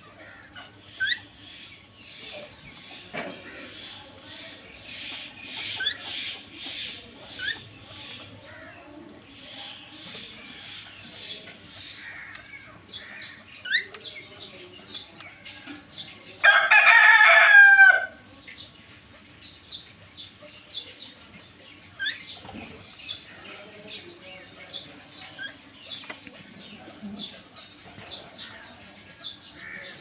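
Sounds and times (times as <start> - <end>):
birds chirping: 0.0 - 30.0.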